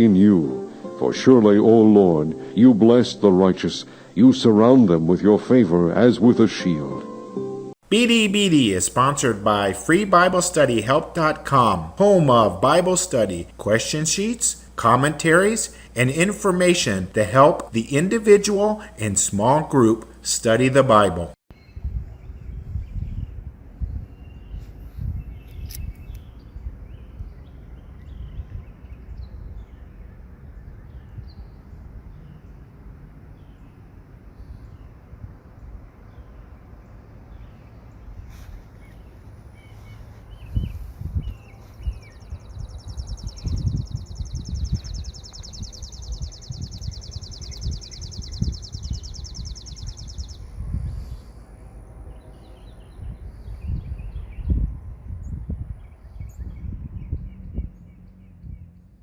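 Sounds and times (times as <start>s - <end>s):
small birds chirping: 7.9s - 59.0s
low rumble of wind: 21.5s - 59.0s
faint chirps: 39.6s - 51.7s
low rumble: 56.4s - 59.0s.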